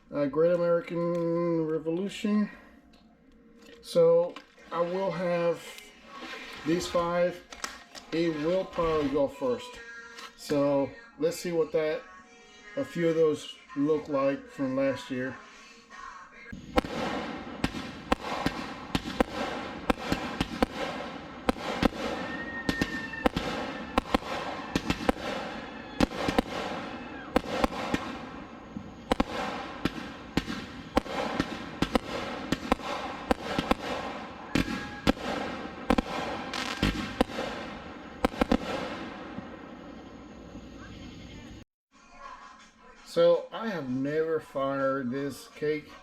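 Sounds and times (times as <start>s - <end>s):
fireworks bangs: 4.0s - 9.4s, 16.5s - 41.6s.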